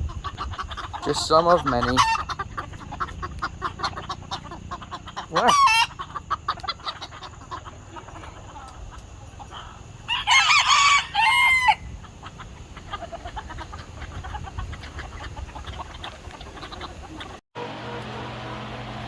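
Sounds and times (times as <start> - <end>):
chickens clucking quietly: 0.0 - 18.8
rooster crowing: 9.5 - 12.0.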